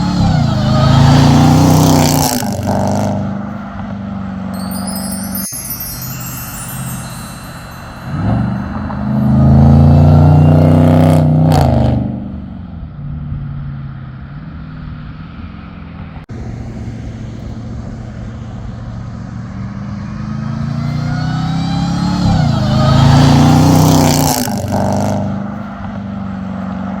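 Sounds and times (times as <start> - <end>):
car engine revving: 0.0 - 4.5, 16.4 - 27.0.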